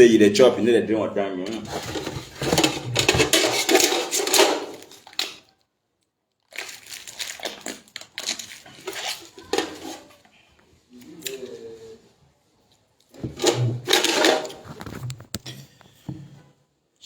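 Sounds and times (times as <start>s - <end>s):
plastic crinkling and crushing: 1.5s - 5.6s, 6.3s - 10.3s, 13.2s - 15.5s.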